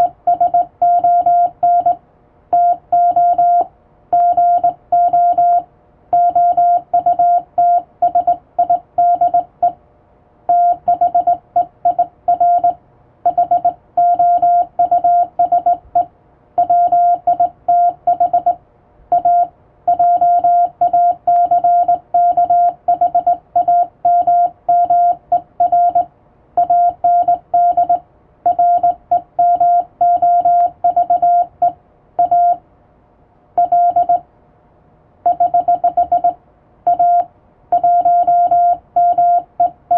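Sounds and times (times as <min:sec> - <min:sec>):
morse code beeping: 0:02.6 - 0:05.6, 0:10.5 - 0:32.6, 0:33.6 - 0:34.2, 0:35.3 - 0:39.8.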